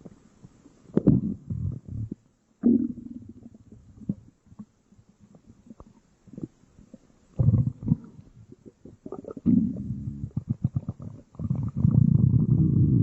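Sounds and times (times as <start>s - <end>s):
slowed stomach growling: 1.0s - 4.2s, 7.4s - 13.0s.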